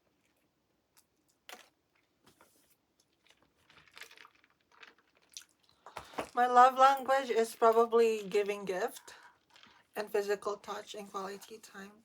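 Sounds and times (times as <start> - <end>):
person chewing food: 3.1 - 6.3.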